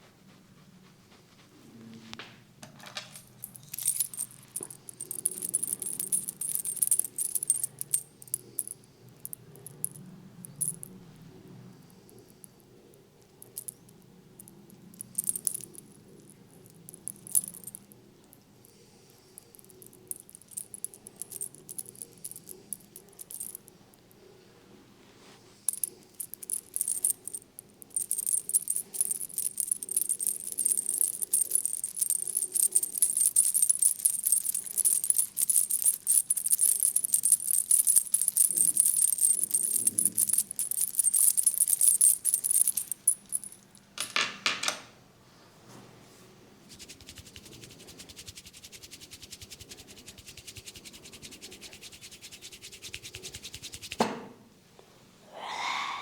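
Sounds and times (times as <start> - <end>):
hands rubbing hair: 46.7 - 54.0.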